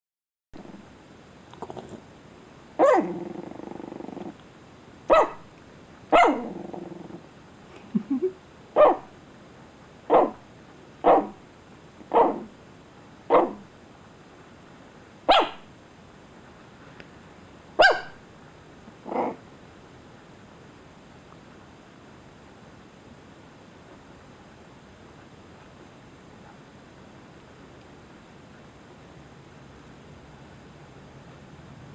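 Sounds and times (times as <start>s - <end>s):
dog growling: 1.5s - 2.1s, 2.8s - 4.4s, 6.2s - 7.3s, 19.0s - 19.4s
dog barking: 2.8s - 3.1s, 5.1s - 5.5s, 6.1s - 6.5s, 8.8s - 9.1s, 10.1s - 10.4s, 11.0s - 11.4s, 12.1s - 12.5s, 13.3s - 13.6s, 15.3s - 15.7s, 17.8s - 18.2s.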